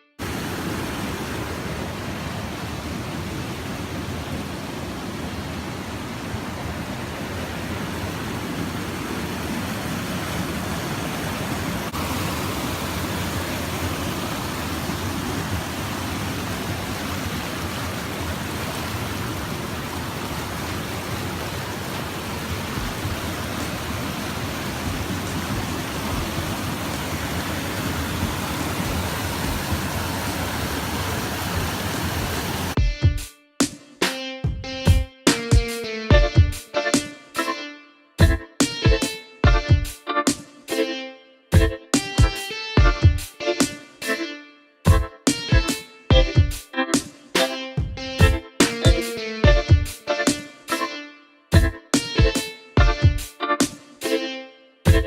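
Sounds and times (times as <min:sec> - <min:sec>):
stream water rushing: 0:00.2 - 0:32.8.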